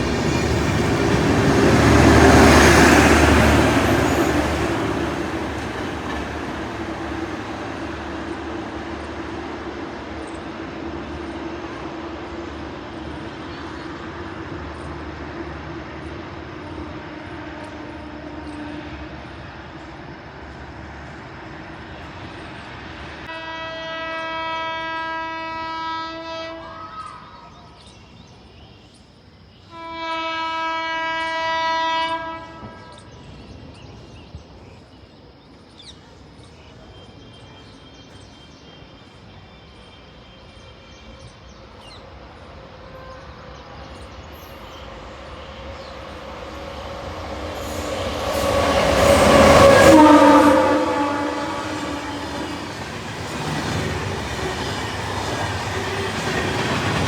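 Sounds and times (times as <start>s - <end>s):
train rumbling: 0.0s - 57.0s
locomotive horn blasts: 23.3s - 26.9s, 29.7s - 33.0s, 45.3s - 53.0s.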